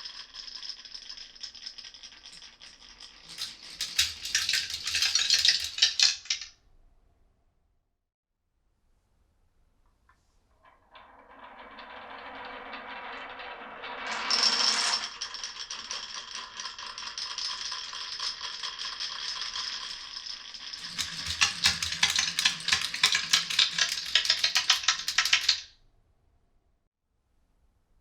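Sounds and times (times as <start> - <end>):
marbles clattering: 0.0 - 6.5, 10.8 - 25.7
marbles rolling on wood: 0.0 - 6.5, 10.6 - 25.7.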